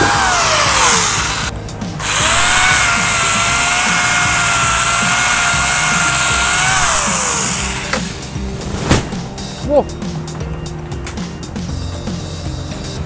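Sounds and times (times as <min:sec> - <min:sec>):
angle grinder motor whine: 0:00.0 - 0:08.3.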